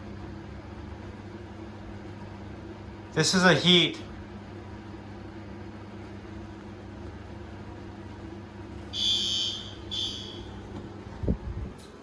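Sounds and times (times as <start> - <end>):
low room hum: 0.0 - 12.0
fire alarm horn blasts: 8.8 - 10.7.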